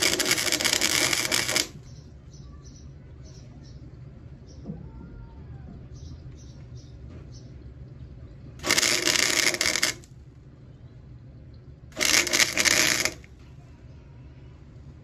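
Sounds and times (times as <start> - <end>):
crackling welding arc: 0.0 - 1.8, 8.6 - 10.1, 11.9 - 13.3
steady low hum: 0.0 - 15.0.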